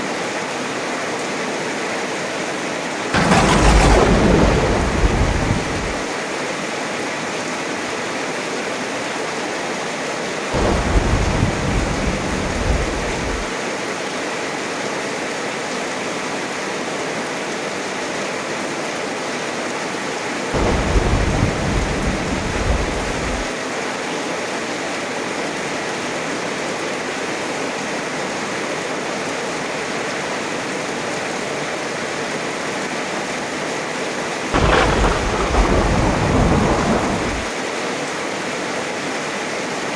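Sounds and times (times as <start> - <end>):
thunder rumbling: 3.2 - 6.1, 10.6 - 13.5, 20.6 - 23.5, 34.6 - 37.5
heavy rain falling: 3.2 - 6.3, 10.6 - 13.6, 20.6 - 23.6, 34.6 - 37.6.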